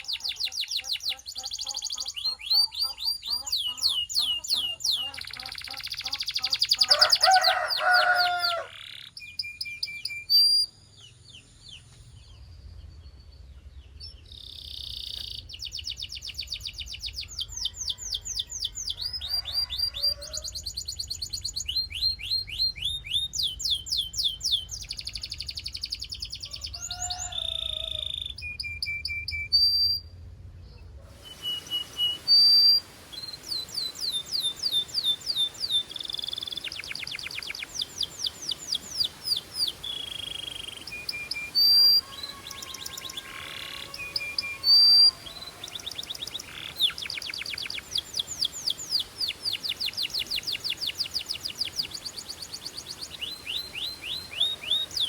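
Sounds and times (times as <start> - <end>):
canary singing trills: 0.0 - 11.1, 14.1 - 30.2, 31.1 - 55.0.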